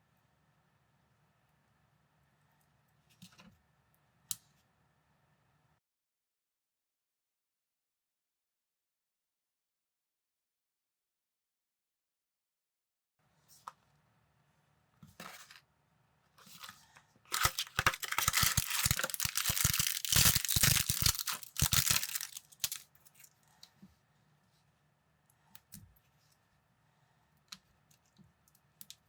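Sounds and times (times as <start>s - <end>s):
plastic building pieces clicking: 17.3s - 22.8s
plastic bag tearing and crinkling: 17.3s - 23.3s.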